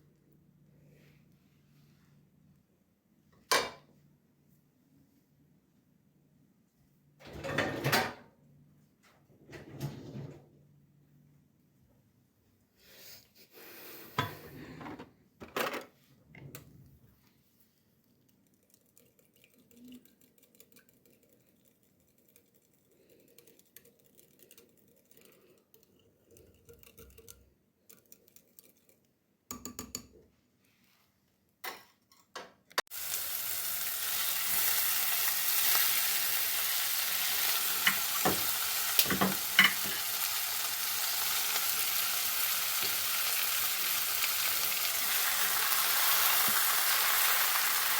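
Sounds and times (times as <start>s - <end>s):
kitchenware knocks and clinks: 3.4s - 3.9s, 7.3s - 8.3s, 38.2s - 40.0s
food sizzling in a hot pan: 32.9s - 47.9s.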